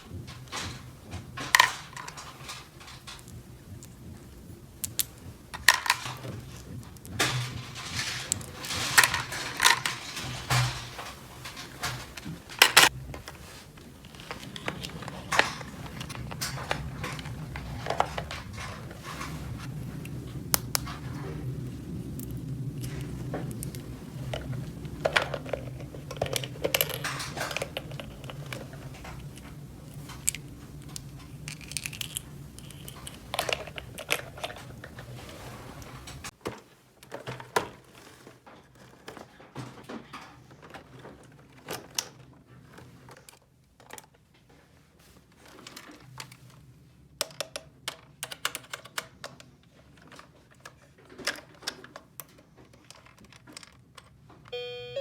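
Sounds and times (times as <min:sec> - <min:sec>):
plastic toy pieces clicking: 0:04.8 - 0:06.2, 0:30.2 - 0:34.9
low steady hum: 0:54.5 - 0:55.0.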